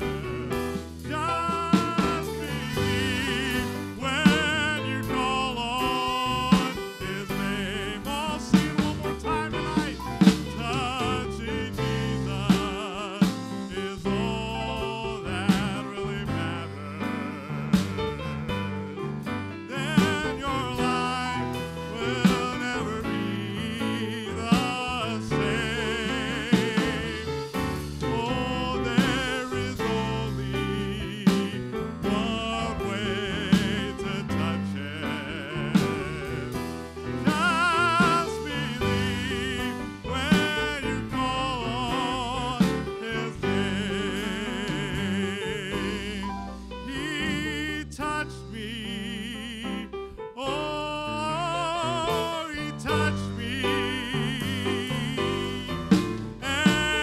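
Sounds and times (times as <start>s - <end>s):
slow gospel music: 0.0s - 57.0s.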